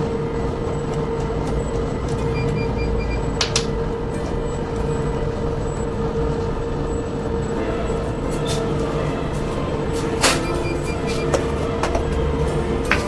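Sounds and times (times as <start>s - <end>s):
engine running: 0.0s - 13.0s.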